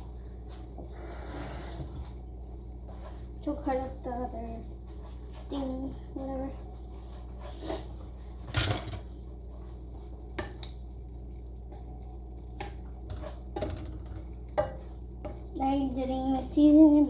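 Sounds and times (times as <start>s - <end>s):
utensils and dishes clattering: 8.4s - 9.1s.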